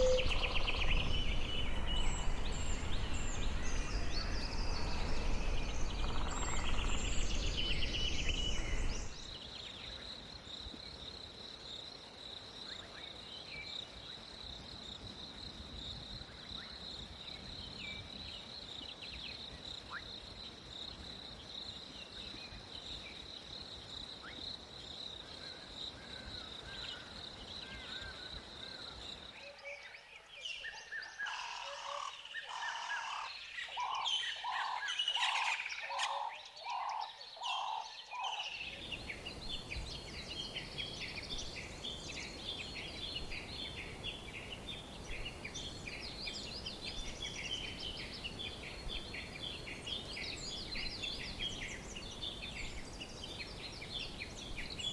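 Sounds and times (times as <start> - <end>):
birds chirping and calling: 0.0 - 9.2, 38.3 - 54.9
loud outdoor noise: 0.0 - 9.3.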